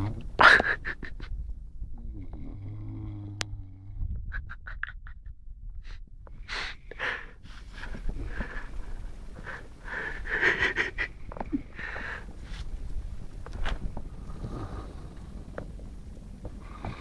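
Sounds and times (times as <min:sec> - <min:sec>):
dog snoring: 0:00.0 - 0:00.6, 0:02.0 - 0:03.9, 0:13.6 - 0:15.9, 0:16.5 - 0:17.0.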